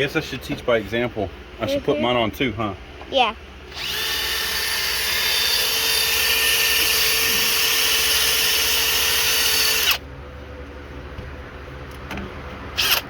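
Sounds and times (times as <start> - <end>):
grinder whining: 3.7 - 10.0, 12.8 - 13.0.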